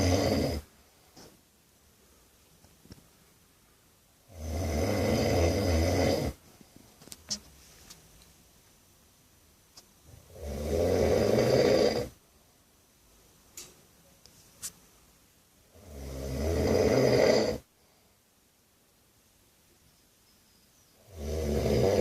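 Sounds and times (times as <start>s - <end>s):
man snoring loudly: 0.0s - 0.7s, 4.3s - 6.4s, 10.2s - 12.2s, 15.7s - 17.7s, 21.0s - 22.0s.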